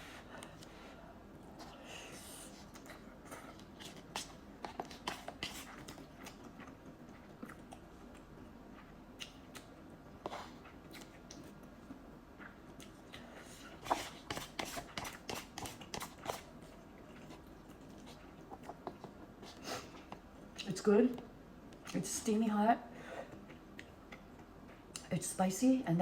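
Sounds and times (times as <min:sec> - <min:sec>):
chewing noodles: 0:01.5 - 0:13.8, 0:14.8 - 0:20.6.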